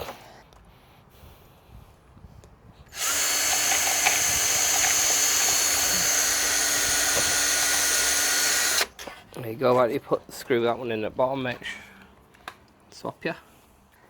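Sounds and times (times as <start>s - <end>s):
power drill boring into wood: 2.9s - 9.0s.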